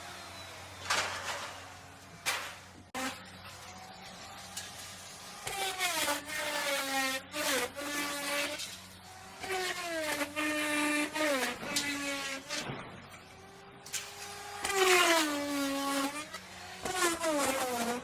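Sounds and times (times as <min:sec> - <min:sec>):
router bit rasping wood: 0:00.0 - 0:12.6
router motor whine: 0:00.0 - 0:18.0.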